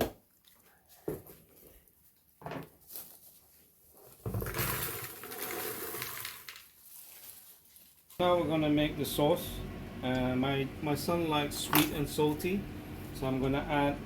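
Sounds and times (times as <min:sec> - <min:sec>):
popcorn poured into bowl: 0:04.3 - 0:06.8.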